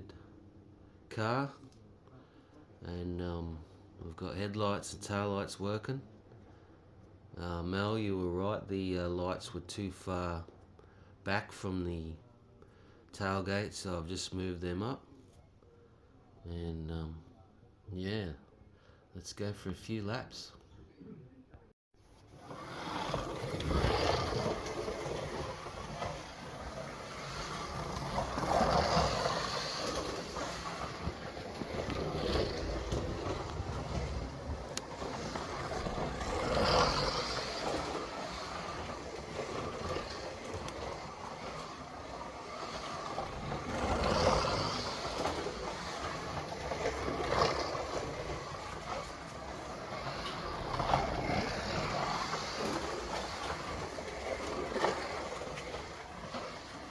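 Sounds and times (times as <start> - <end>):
slot car whirring: 22.2 - 56.9.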